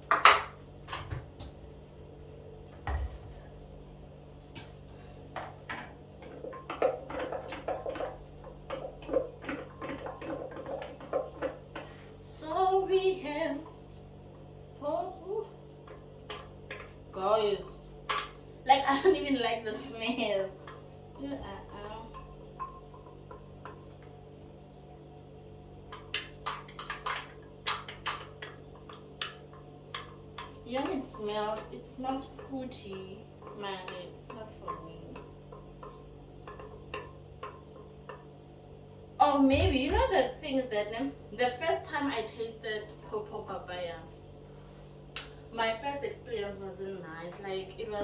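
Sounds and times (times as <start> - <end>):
steady low hum: 0.0 - 48.0
kitchen utensils knocking and clicking: 5.4 - 11.6, 25.9 - 38.2.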